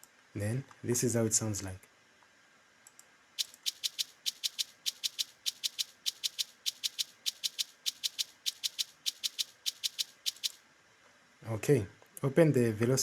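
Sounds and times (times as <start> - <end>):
shaker loop: 3.4 - 10.6.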